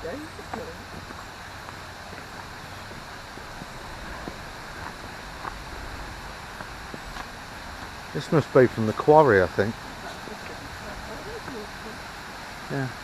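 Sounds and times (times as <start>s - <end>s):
flowing stream water: 0.0s - 13.0s.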